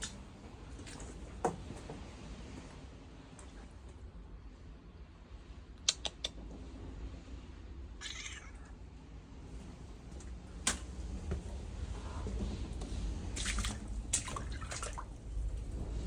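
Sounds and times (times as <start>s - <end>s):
cat meowing: 8.0s - 8.8s
low rumble: 8.7s - 16.0s.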